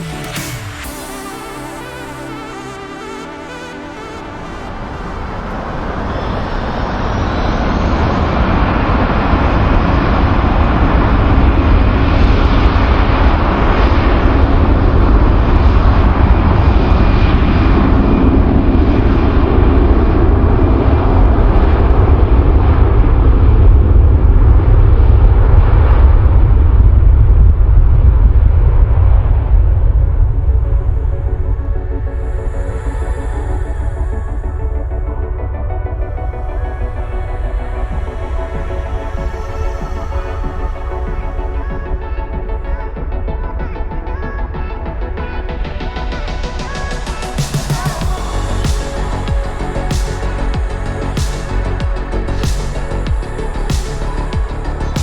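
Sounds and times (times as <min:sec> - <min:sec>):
jet engines rumbling: 0:00.0 - 0:24.5.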